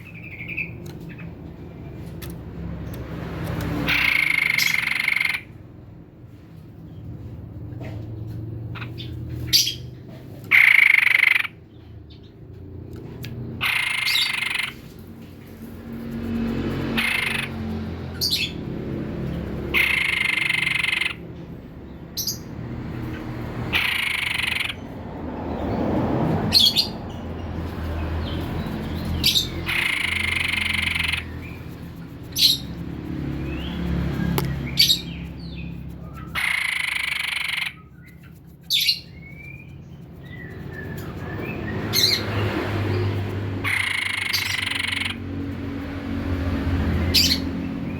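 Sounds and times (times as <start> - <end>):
bird singing: 0.0 - 1.3, 3.9 - 5.5, 8.8 - 12.3, 13.6 - 14.9, 16.2 - 21.2, 23.7 - 25.0, 26.5 - 45.5.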